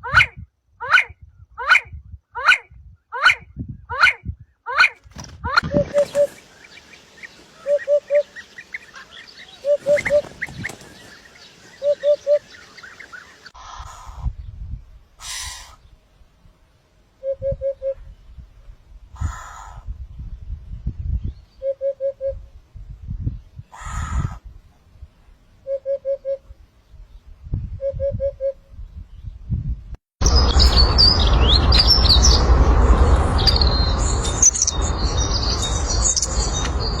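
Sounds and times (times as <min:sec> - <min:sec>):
faint bird chirping: 0:05.6 - 0:16.2
low rumble: 0:28.8 - 0:37.0.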